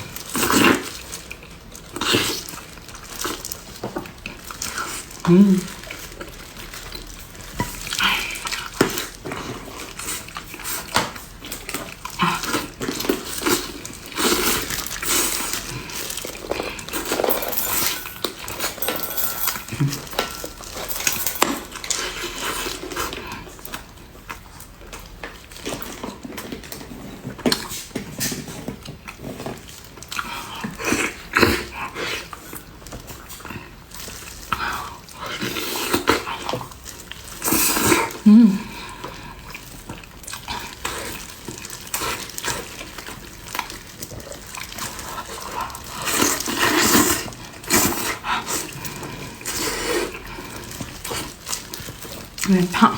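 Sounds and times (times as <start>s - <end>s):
chewing and mouth noises: 0.0s - 52.9s
utensils clinking against dish: 17.0s - 20.2s.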